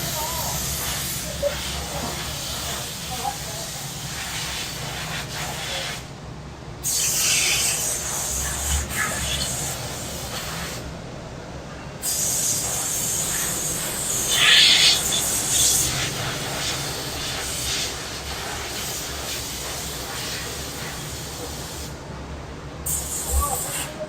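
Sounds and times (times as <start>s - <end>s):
cicadas buzzing: 12.4s - 16.2s.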